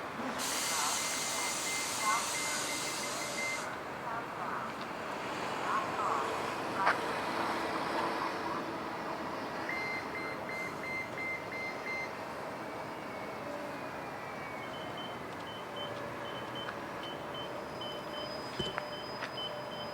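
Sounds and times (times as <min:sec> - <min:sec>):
street traffic: 0:00.0 - 0:19.9
high-pitched repeating beep: 0:01.4 - 0:03.7, 0:09.7 - 0:12.1
quick electronic beeps: 0:01.4 - 0:03.7, 0:09.7 - 0:12.1.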